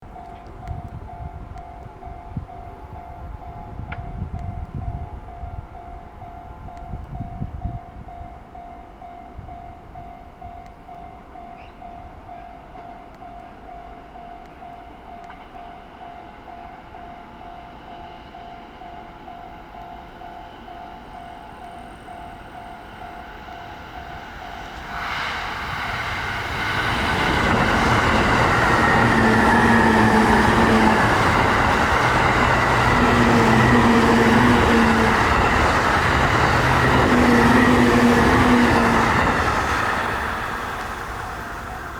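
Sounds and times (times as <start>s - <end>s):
level crossing warning bell: 0.0s - 24.8s, 26.0s - 41.9s
train wheels rushing on rails: 16.5s - 41.9s.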